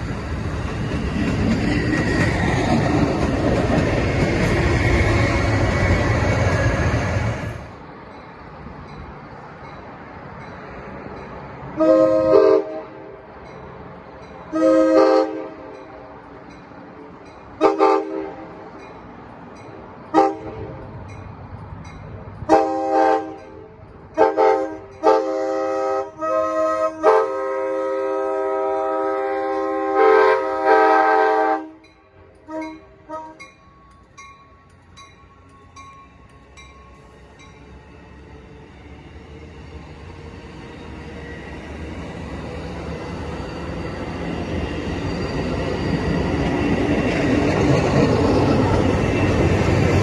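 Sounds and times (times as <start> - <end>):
faint low train rumble: 0.0 - 50.0
train air horn blasts: 11.8 - 13.2, 14.5 - 15.8, 17.6 - 18.6, 20.1 - 20.8, 22.5 - 33.5.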